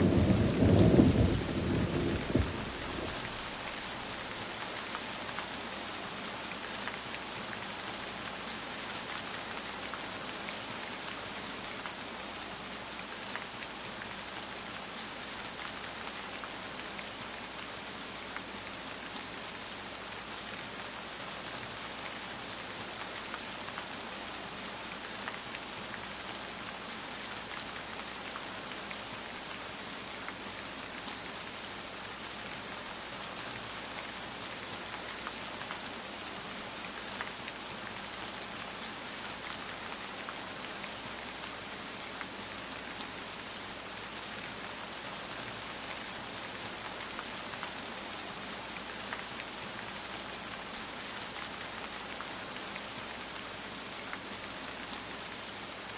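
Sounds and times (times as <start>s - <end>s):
rain hissing: 0.0s - 4.8s
raindrops ticking on a surface: 0.1s - 55.9s.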